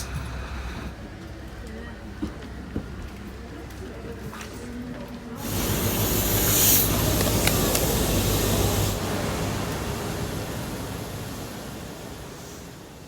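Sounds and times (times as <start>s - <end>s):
train air hissing: 5.4s - 13.0s
train rumble: 5.4s - 13.0s.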